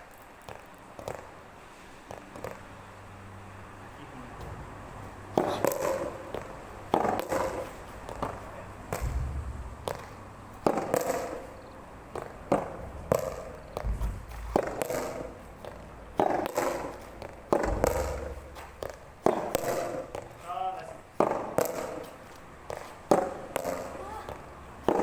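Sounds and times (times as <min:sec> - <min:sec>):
tennis ball pops: 0:05.3 - 0:11.5, 0:12.1 - 0:20.3, 0:21.2 - 0:22.1, 0:22.7 - 0:25.0
wind buffeting microphone: 0:09.0 - 0:10.5.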